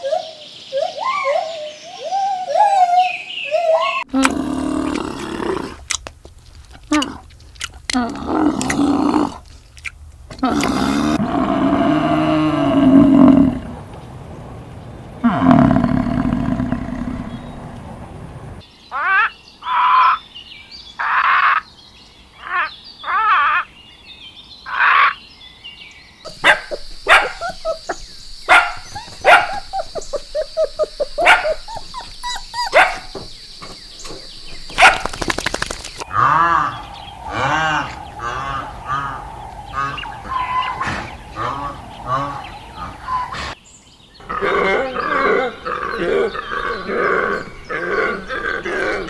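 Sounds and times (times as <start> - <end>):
animal calls: 15.2 - 18.2, 26.3 - 43.6, 44.2 - 49.0
barking-like calls: 15.2 - 18.6, 26.3 - 43.6, 44.2 - 49.0
rapid sharp clicks: 34.6 - 36.1.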